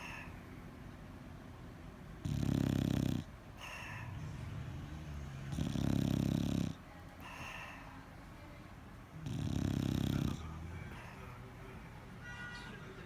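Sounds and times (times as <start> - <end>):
dog breathing quietly: 0.0 - 0.8, 2.2 - 8.2, 9.2 - 12.0
dog snoring loudly: 2.2 - 7.5, 9.1 - 11.4.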